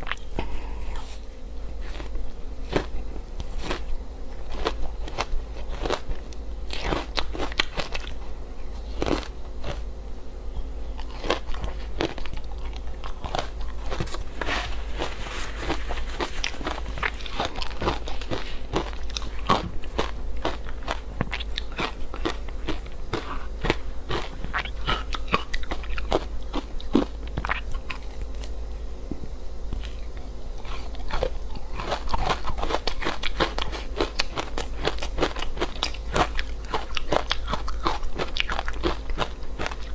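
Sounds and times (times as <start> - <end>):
low steady hum: 0.0 - 39.9
crunching frozen ice: 11.0 - 27.6, 30.7 - 39.9.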